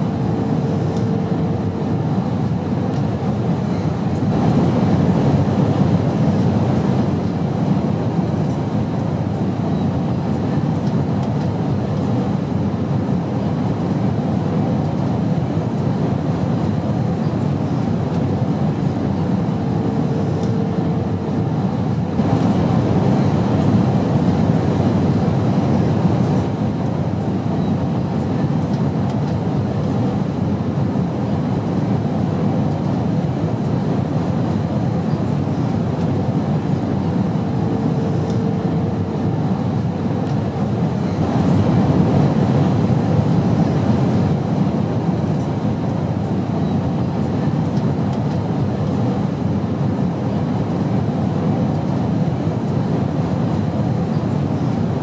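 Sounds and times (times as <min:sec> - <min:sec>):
airplane drone in flight: 0:00.0 - 0:55.0.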